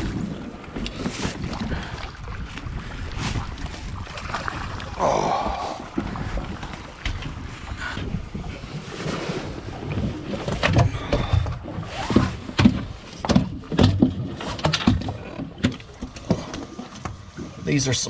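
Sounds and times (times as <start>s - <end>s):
wind on microphone: 0.0s - 13.7s
waves slapping boat hull: 0.0s - 18.0s
knocks and thumps on board: 10.5s - 17.2s.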